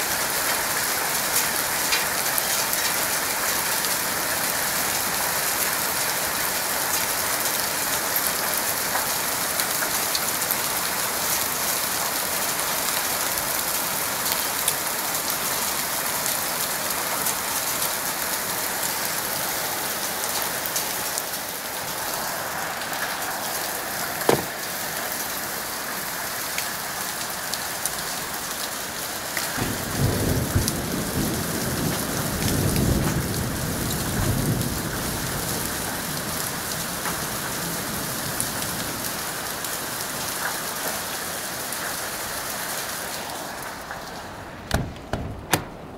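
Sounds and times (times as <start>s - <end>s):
heavy rain and hail: 0.0s - 45.9s
sharp knock: 24.3s - 24.5s.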